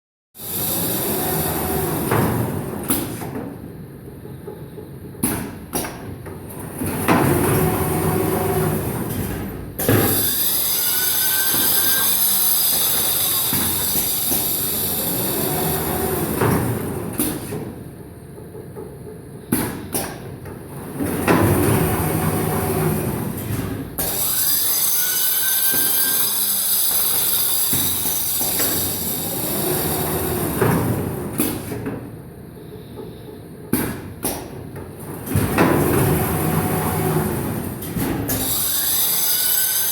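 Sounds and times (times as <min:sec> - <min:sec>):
machine running with hiss: 0:07.3 - 0:17.6, 0:21.6 - 0:31.8.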